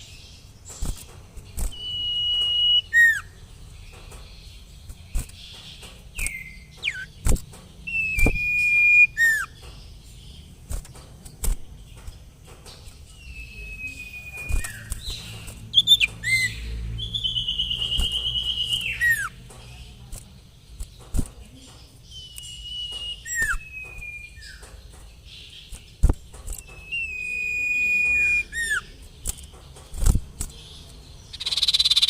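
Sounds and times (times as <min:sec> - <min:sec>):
bird trill: 0:00.0 - 0:10.9, 0:12.0 - 0:19.9, 0:21.4 - 0:29.9, 0:30.5 - 0:32.0
bird whistling calls: 0:01.6 - 0:03.4, 0:06.2 - 0:07.1, 0:07.8 - 0:09.6, 0:13.2 - 0:19.4, 0:22.1 - 0:24.7, 0:26.5 - 0:29.0, 0:31.3 - 0:32.0
sharp clicks: 0:03.9 - 0:09.8, 0:14.0 - 0:32.0.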